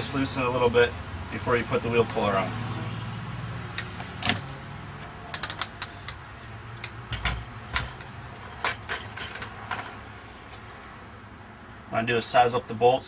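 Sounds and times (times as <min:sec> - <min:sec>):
metallic clinks of tools and bolts: 0:03.8 - 0:10.0.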